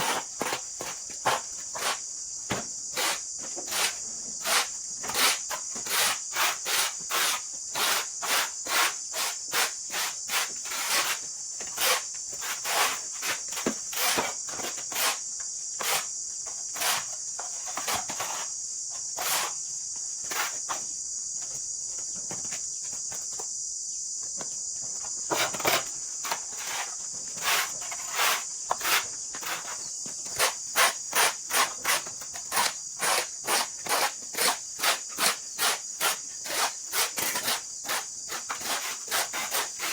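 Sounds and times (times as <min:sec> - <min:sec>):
high drone of insects: 0:00.0 - 0:39.9
hand saw rasping: 0:03.0 - 0:11.2, 0:25.3 - 0:39.9.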